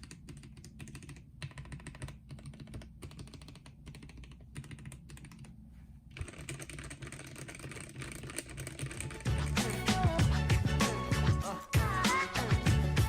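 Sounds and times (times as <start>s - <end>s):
mechanical keyboard typing: 0.0s - 5.5s, 6.1s - 9.8s.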